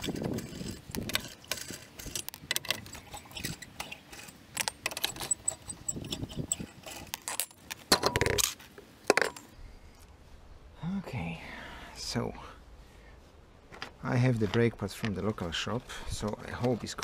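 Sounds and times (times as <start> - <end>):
metal parts and tools clinking: 0.0 - 9.5.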